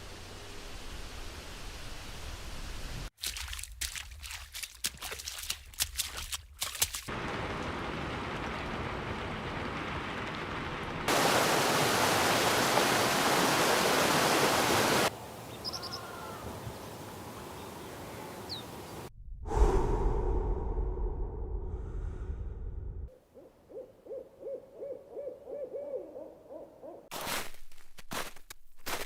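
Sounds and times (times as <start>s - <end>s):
outdoor rushing noise: 19.0s - 23.1s
low rumble: 19.1s - 23.1s.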